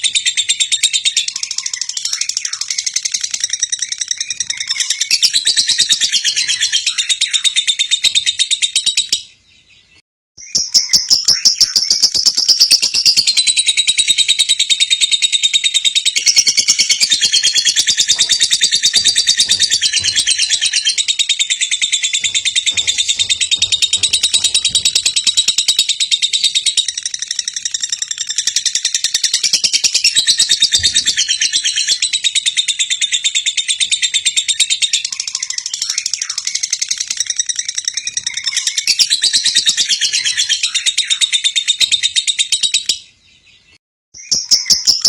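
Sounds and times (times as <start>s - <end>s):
lovebird chattering trill: 10.5s - 33.3s.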